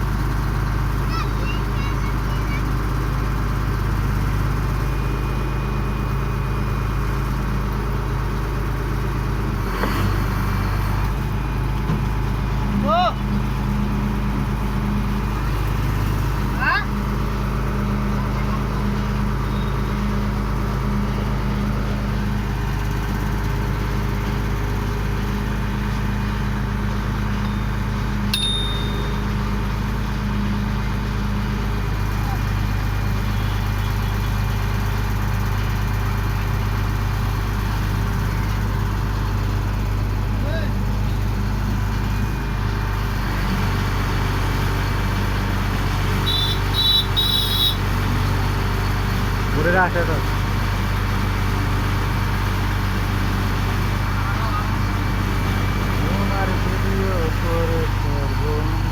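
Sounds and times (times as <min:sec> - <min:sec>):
drilling rig engine running: 0:00.0 - 0:58.9
sharp metallic ping: 0:28.3 - 0:29.4.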